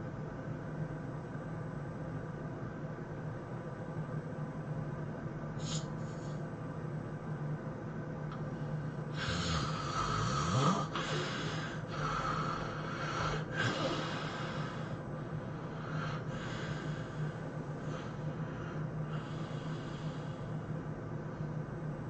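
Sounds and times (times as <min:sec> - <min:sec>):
person snoring heavily: 0:09.1 - 0:15.0.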